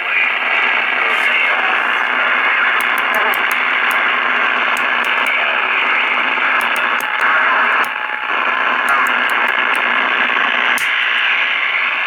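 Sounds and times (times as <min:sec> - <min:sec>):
radio static hiss: 0:00.0 - 0:12.0.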